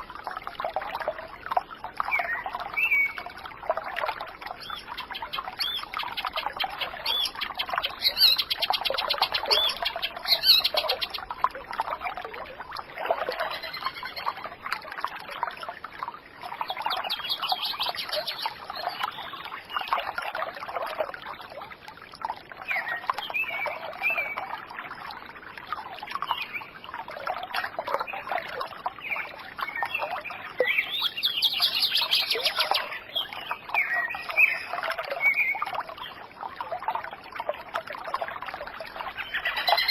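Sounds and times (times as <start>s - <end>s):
trickle of running water: 0.0s - 39.9s
birds chirping and singing: 4.6s - 11.3s, 30.6s - 35.6s, 39.2s - 39.9s.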